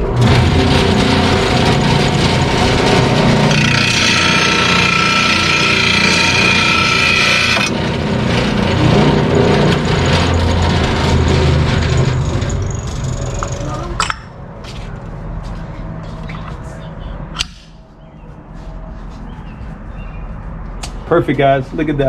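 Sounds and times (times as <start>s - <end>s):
grinder motor running: 0.0s - 13.8s
grinder grinding steel blade: 0.0s - 13.9s.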